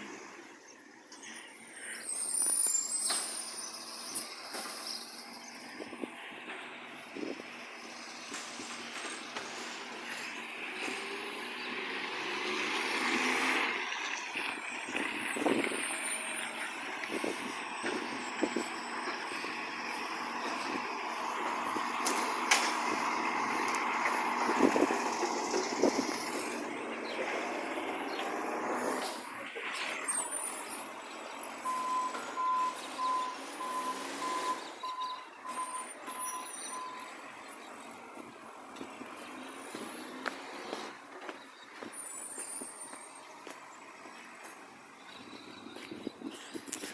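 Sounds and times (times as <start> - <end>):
reversing alarm beeping: 1.3 - 5.9, 31.5 - 37.2
garbage truck roaring exhaust: 2.7 - 46.9.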